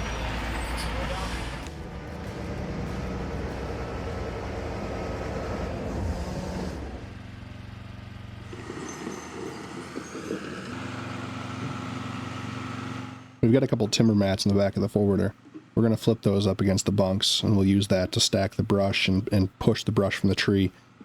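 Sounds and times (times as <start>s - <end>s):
heavy machine engine running: 0.0s - 14.2s.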